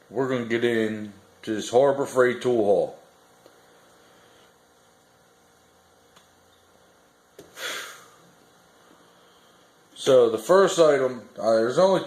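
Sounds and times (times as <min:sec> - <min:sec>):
low electrical hum: 0:00.0 - 0:12.0
short hissy burst of noise: 0:07.4 - 0:08.4.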